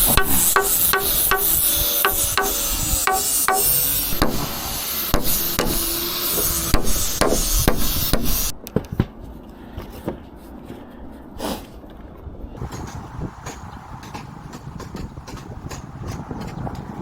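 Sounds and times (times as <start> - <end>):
hammer blows on timber: 0.0 - 8.6, 12.7 - 16.8
loud steady high hiss: 0.0 - 8.6.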